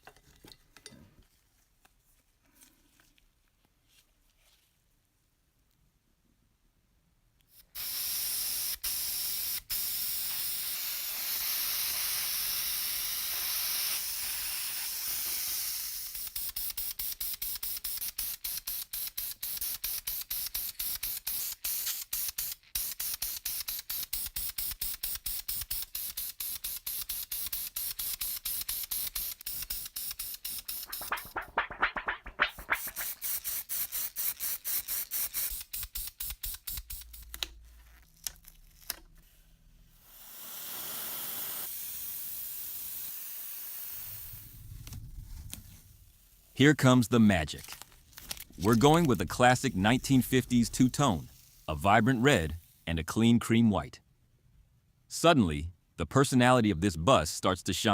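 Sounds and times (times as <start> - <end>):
spray paint hissing: 7.5 - 37.4, 40.0 - 46.6, 47.6 - 52.8.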